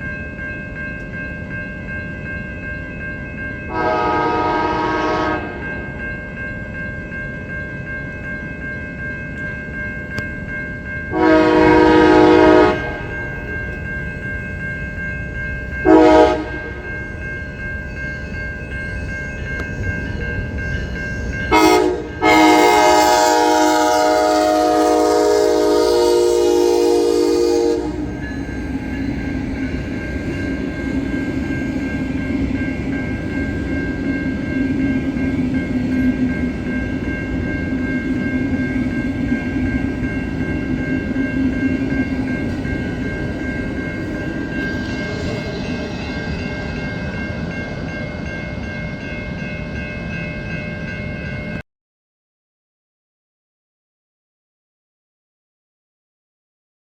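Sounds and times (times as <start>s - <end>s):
train rumbling past: 0.0s - 51.6s
locomotive air horn blasts: 3.7s - 5.6s, 11.1s - 13.1s, 15.8s - 16.8s, 21.5s - 28.2s.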